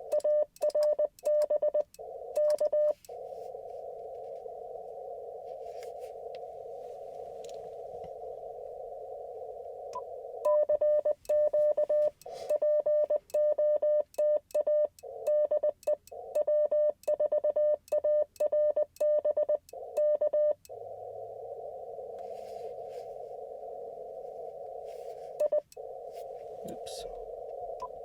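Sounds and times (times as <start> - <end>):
receiver band hiss: 1.8 - 10.5, 11.5 - 12.6, 20.6 - 28.0
morse code tone: 9.9 - 20.6.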